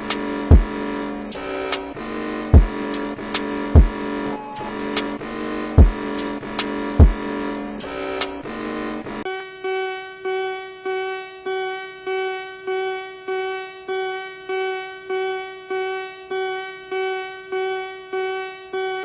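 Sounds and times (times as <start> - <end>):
repeating plucked alarm tone: 0.0 - 9.2.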